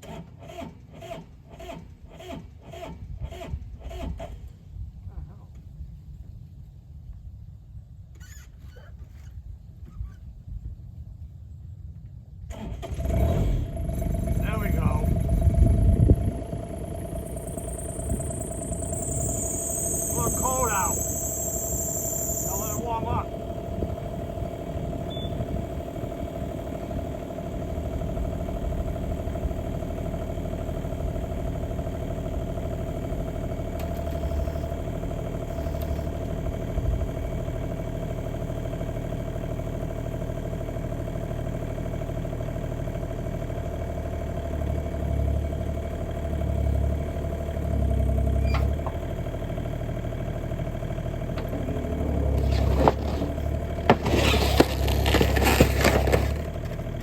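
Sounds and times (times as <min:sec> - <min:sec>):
diesel engine idling: 0:12.5 - 0:57.0
steady whine: 0:14.2 - 0:28.8
loud crackling and scraping: 0:52.2 - 0:57.0.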